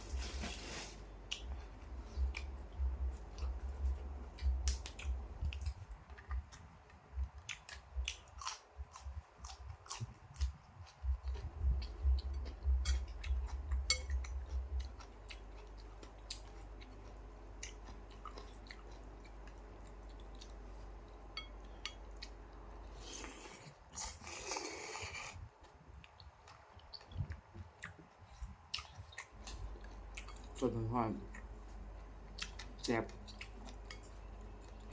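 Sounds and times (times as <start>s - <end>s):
person chewing: 0.0s - 34.9s
slurping broth: 23.0s - 25.4s.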